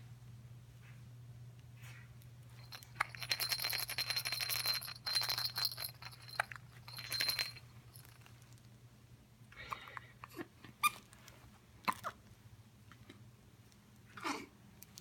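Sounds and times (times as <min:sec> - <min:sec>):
steady low hum: 0:00.0 - 0:10.6
small jingle bell jangling: 0:02.5 - 0:08.4.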